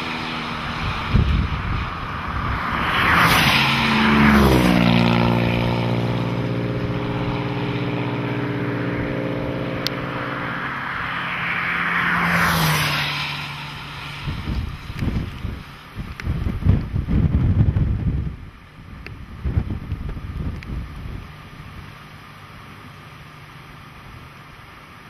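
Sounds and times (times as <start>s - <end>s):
vehicle engine passing: 0.0s - 18.3s
highway traffic passing: 0.0s - 25.0s.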